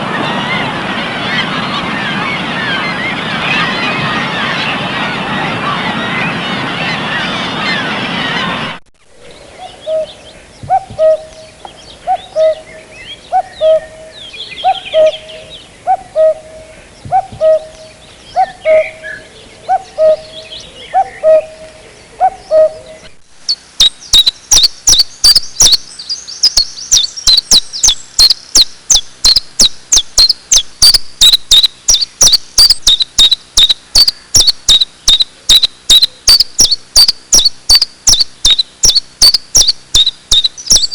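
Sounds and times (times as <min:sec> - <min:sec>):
small birds chirping faintly: 0:00.0 - 0:40.9
bird low hooting call: 0:09.1 - 0:23.2
rapid high-pitched chirping: 0:23.5 - 0:40.9.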